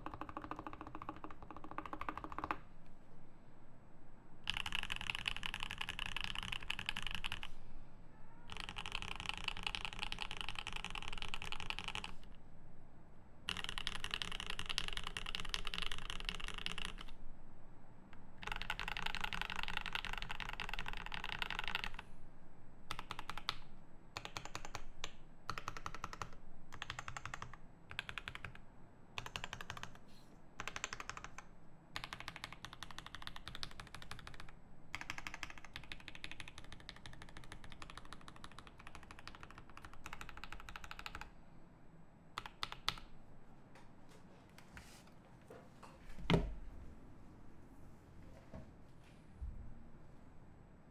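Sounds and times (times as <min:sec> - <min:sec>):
fast typing on mechanical keyboard: 0:00.0 - 0:02.6, 0:04.4 - 0:07.6, 0:08.5 - 0:12.3, 0:13.5 - 0:17.2, 0:18.4 - 0:22.1, 0:22.9 - 0:23.6, 0:24.2 - 0:28.6, 0:29.2 - 0:41.3, 0:42.4 - 0:43.1.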